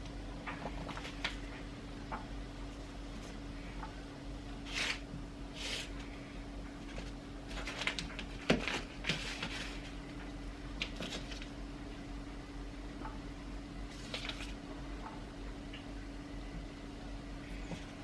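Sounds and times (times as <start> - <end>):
steady hum: 0.0 - 18.0
rustling on a worktop: 4.6 - 6.2, 6.8 - 11.5.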